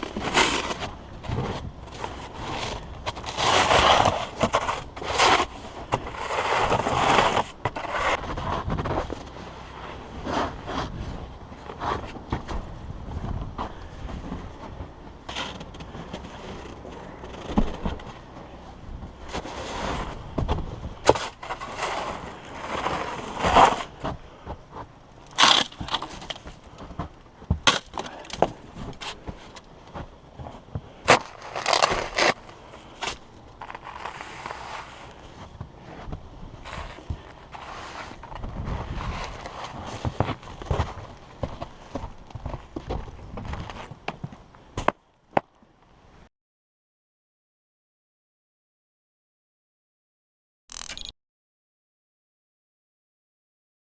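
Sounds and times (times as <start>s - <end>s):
snow shovel scraping snow: 0.0s - 9.2s, 21.1s - 23.9s, 33.0s - 35.2s
sharp crunches and knocks: 20.4s - 32.4s, 50.7s - 51.1s.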